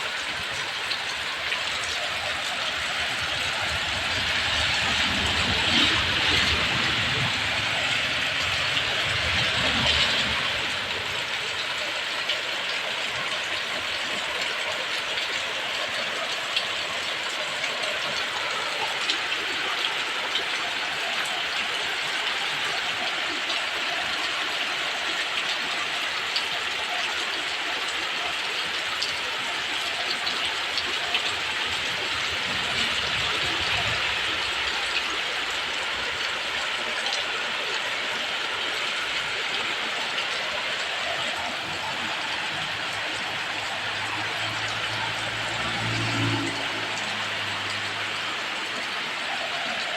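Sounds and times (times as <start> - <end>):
heavy rain pouring: 0.0 - 49.9
strong wind: 2.7 - 11.4.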